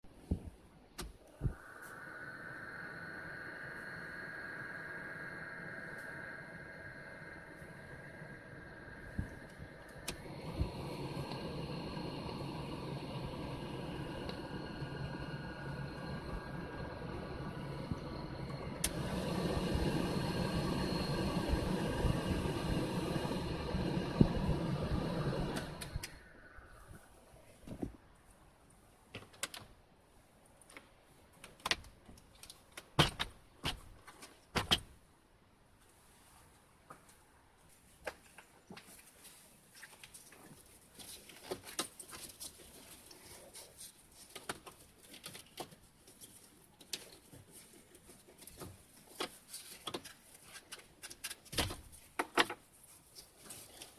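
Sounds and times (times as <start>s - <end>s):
blower fan rushing hum: 1.4s - 27.4s.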